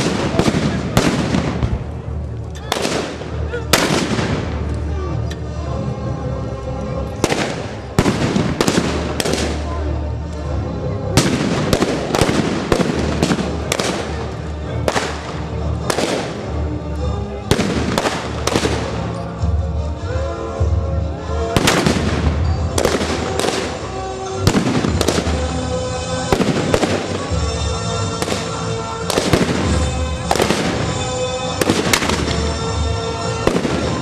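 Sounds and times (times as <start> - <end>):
sharp loud bangs: 0.0 - 1.9, 2.7 - 4.6, 7.2 - 9.6, 11.2 - 14.3, 17.5 - 19.1, 21.6 - 25.5
music with steady bass: 0.0 - 34.0.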